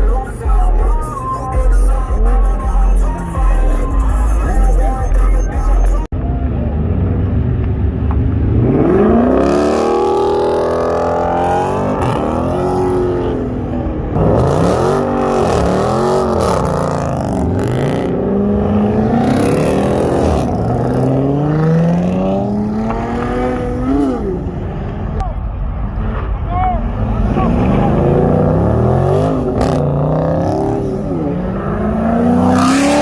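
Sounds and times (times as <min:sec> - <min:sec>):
car engine revving hard: 0:08.4 - 0:24.7, 0:26.9 - 0:33.0.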